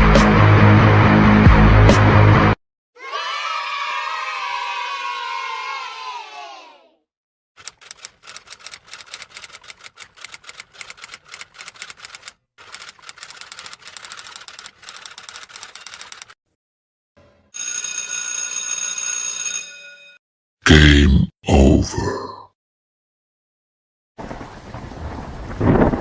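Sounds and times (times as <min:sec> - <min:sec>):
rapid mechanical clicking: 0:07.6 - 0:16.4.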